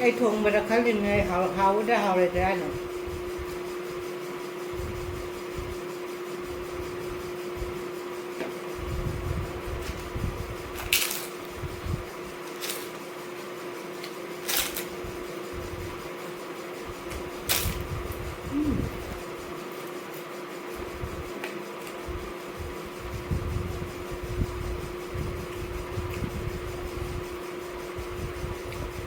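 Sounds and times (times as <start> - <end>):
steady electrical hum: 0.0 - 29.0
crisp food crunches: 10.8 - 11.4, 12.5 - 13.0, 14.4 - 14.9.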